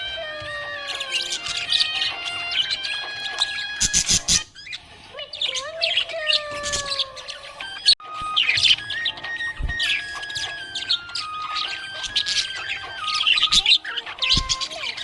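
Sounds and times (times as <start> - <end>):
background music of held notes: 0.0 - 4.6, 7.3 - 15.0
parrots chirping and tweeting: 0.0 - 15.0.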